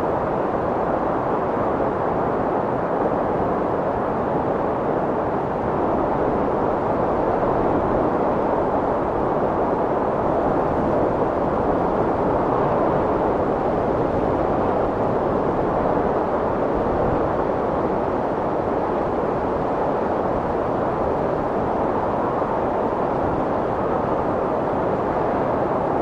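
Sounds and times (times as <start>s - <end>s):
strong wind blowing: 0.0s - 26.0s.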